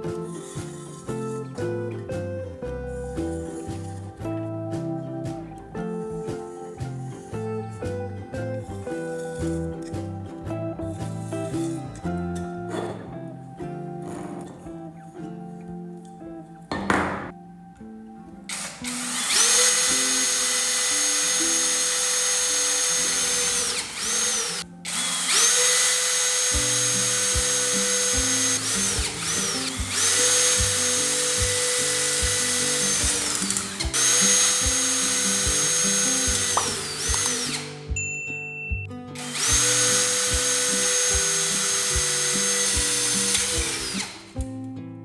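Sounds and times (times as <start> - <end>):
background music with beat: 0.0 - 45.0
electric power tool whine: 14.0 - 14.7, 18.5 - 38.0, 39.2 - 44.5.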